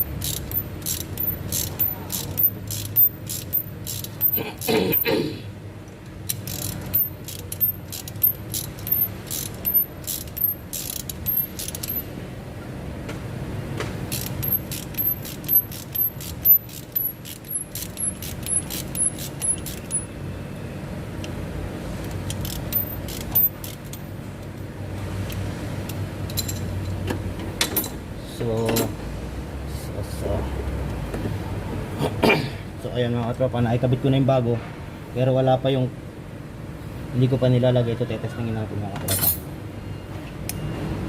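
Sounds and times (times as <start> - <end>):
ratchet wrench clicking: 0.0 - 4.7, 6.2 - 12.1, 14.1 - 20.1, 22.0 - 24.0.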